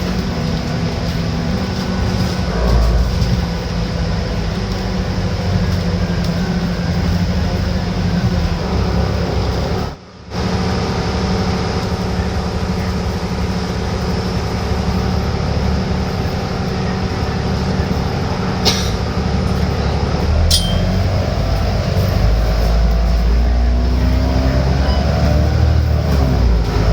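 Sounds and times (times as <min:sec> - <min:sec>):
bus diesel engine whining drone: 0:00.0 - 0:26.9.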